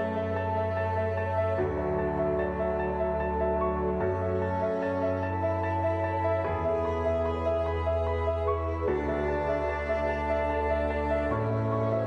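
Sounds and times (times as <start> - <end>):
soft new-age music: 0.0 - 12.0.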